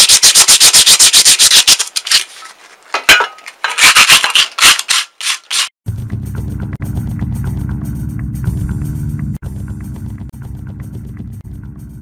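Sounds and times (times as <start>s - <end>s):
sandpaper scrubbing metal: 0.0s - 2.5s, 3.6s - 5.8s
steady low sound: 5.9s - 12.0s.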